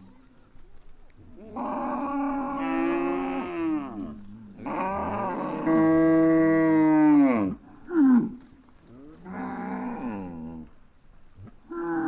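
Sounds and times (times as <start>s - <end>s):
cows mooing: 1.5s - 7.6s.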